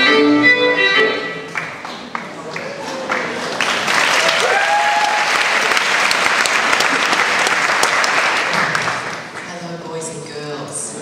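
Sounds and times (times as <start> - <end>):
crowd cheering: 1.5 - 9.4
audience clapping: 1.5 - 9.6.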